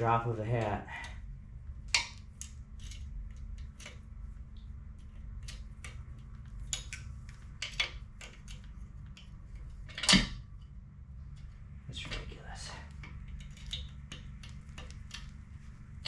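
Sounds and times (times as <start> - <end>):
light metallic clicks and taps: 4.6 - 15.6.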